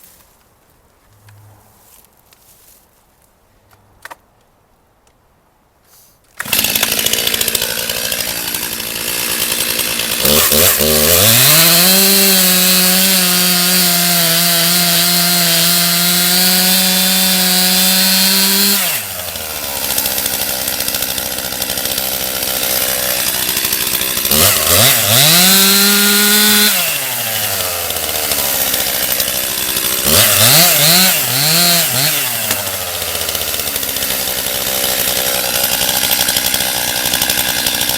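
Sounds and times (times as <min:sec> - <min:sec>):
chainsaw revving and idling: 0:06.4 - 0:37.9.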